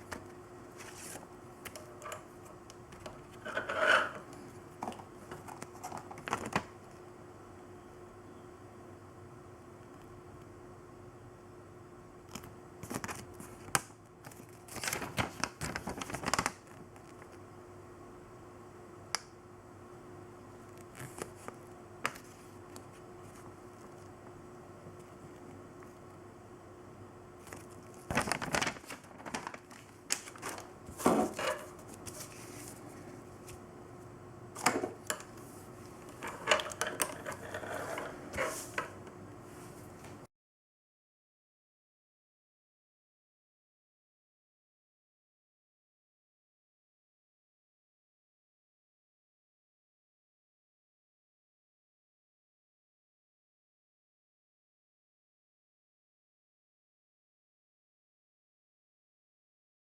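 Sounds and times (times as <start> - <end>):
clicks taps and rustles: 0.0 - 6.8
rustling and clicking handling noises: 0.0 - 7.0, 12.3 - 17.4, 20.6 - 26.0, 27.4 - 33.6, 34.6 - 40.2
faint hum: 0.0 - 40.3.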